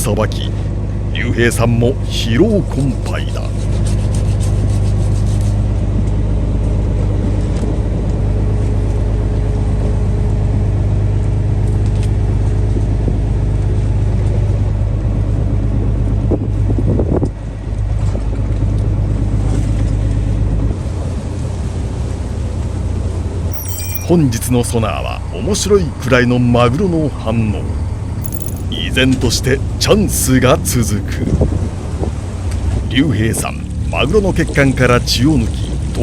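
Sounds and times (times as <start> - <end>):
boat engine droning: 0.0 - 4.1, 28.8 - 36.0.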